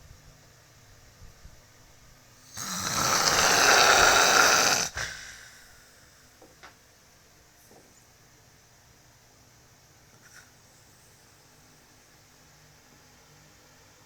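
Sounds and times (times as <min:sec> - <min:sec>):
person snoring: 0:02.5 - 0:05.8.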